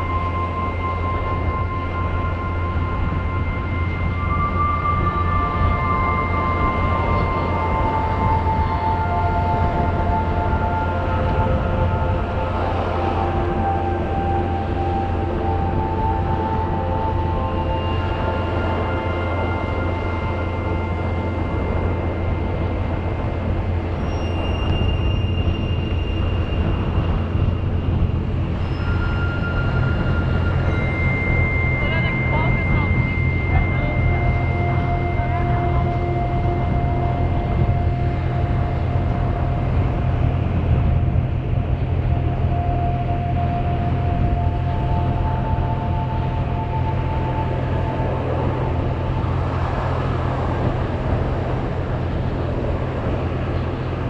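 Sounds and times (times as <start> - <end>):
wind buffeting microphone: 0.0 - 54.0
faint high tone: 28.6 - 50.5.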